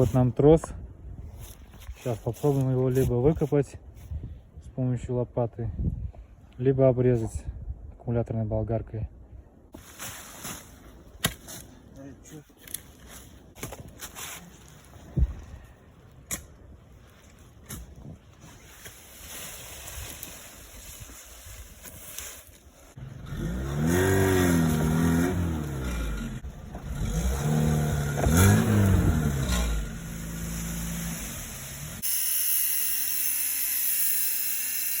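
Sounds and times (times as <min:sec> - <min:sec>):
angle grinder cutting steel cable: 0:23.1 - 0:35.0.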